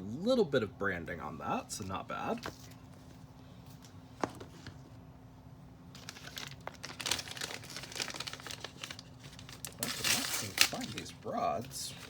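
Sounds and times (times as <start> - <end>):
plastic bags crinkling: 5.9 - 12.0.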